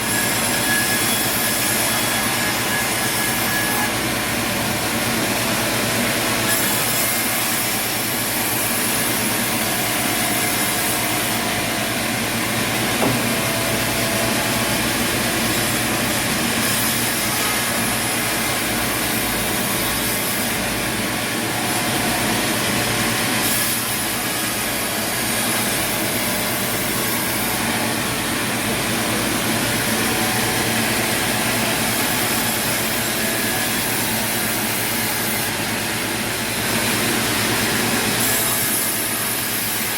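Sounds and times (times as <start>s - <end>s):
sawmill saw cutting wood: 0.0s - 39.9s
short knock: 13.0s - 13.6s.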